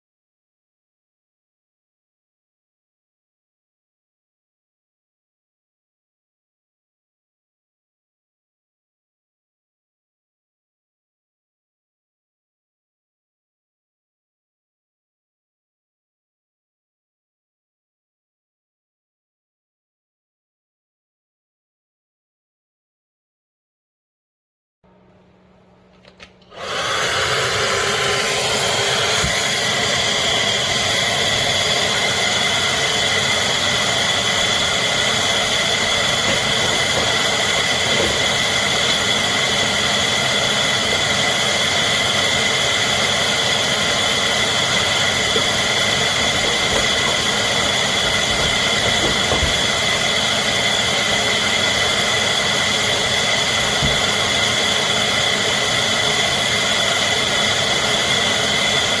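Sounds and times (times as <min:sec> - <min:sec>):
vacuum cleaner motor whining: 0:26.0 - 0:59.0.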